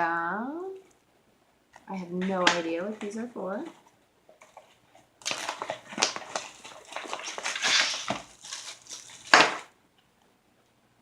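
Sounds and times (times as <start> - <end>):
plastic packaging crinkling: 4.4 - 9.8.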